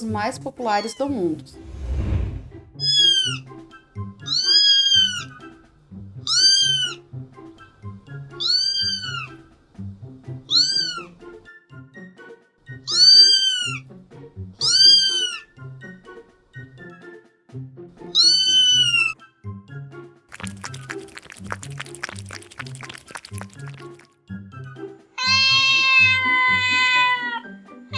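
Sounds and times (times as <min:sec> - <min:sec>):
background music with steady beat: 0:02.4 - 0:26.2
cat meowing: 0:02.8 - 0:03.4, 0:04.2 - 0:05.3, 0:06.3 - 0:07.0, 0:08.4 - 0:09.4, 0:10.5 - 0:11.1, 0:12.9 - 0:13.8, 0:14.6 - 0:15.5, 0:18.1 - 0:19.2, 0:25.2 - 0:27.4.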